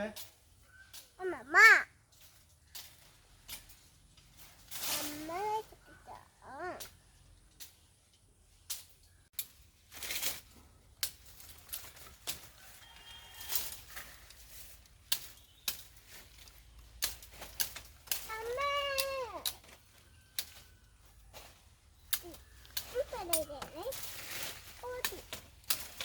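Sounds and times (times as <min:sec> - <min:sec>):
rooster call: 0:12.6 - 0:14.0.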